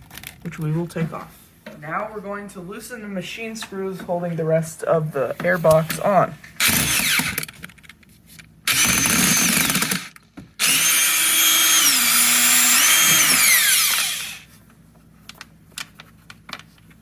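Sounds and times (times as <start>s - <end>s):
power drill spinning: 6.6s - 7.5s, 8.7s - 14.5s.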